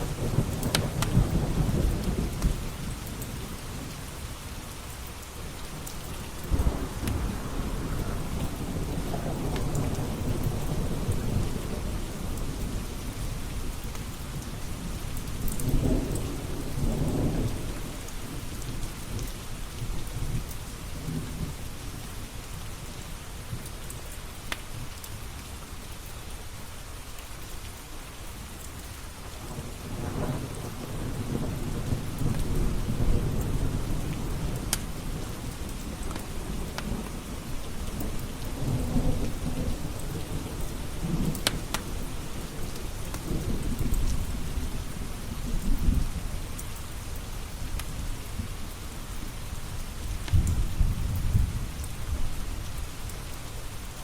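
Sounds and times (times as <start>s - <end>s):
steady rain: 0.0s - 54.0s
rolling thunder: 6.2s - 13.8s, 50.2s - 52.8s.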